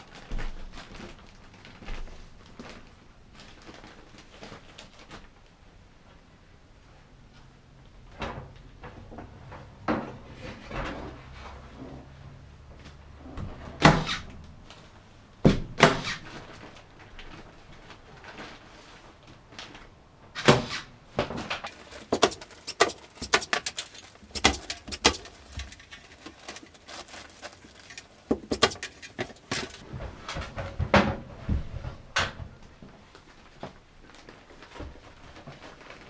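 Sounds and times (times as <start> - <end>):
hard objects knocking and clicking: 21.7 - 29.8.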